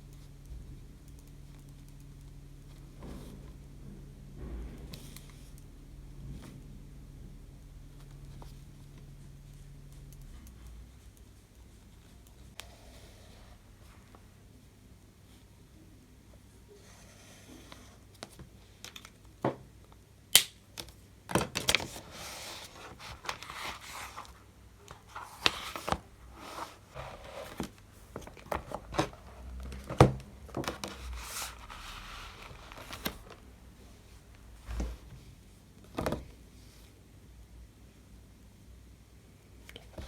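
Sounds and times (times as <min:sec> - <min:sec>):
crinkling and rustling handling: 0:20.8 - 0:36.9.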